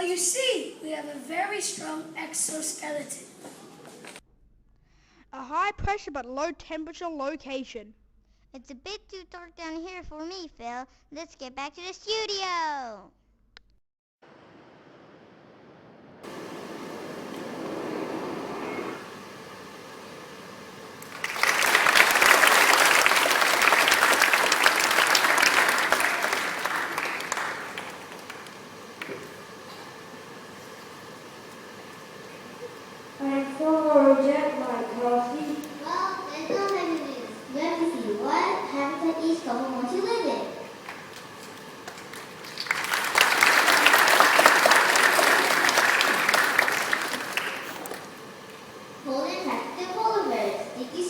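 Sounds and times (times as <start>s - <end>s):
audience applauding: 16.2s - 19.1s, 21.0s - 29.7s, 40.8s - 41.2s, 41.8s - 48.3s.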